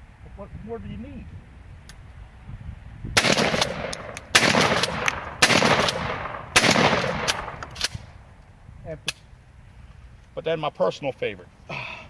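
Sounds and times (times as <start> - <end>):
shotgun pump action clacks: 3.2 - 8.0
shotgun shots: 3.2 - 8.1.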